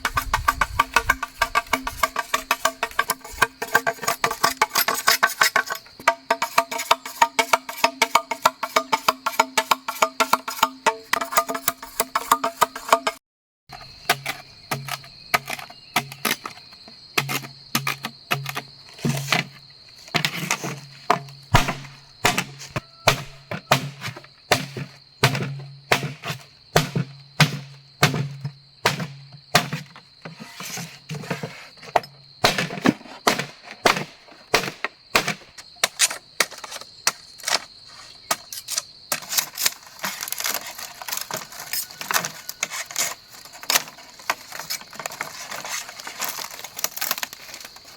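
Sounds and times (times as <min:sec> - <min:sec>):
wood knocking and cracking: 0:32.0 - 0:37.7.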